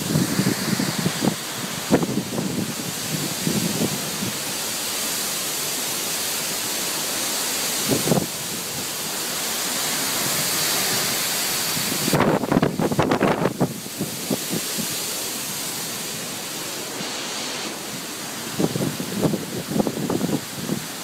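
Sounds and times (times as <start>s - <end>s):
wind gusting: 0.0s - 5.6s, 7.7s - 21.0s
rain: 0.0s - 21.0s.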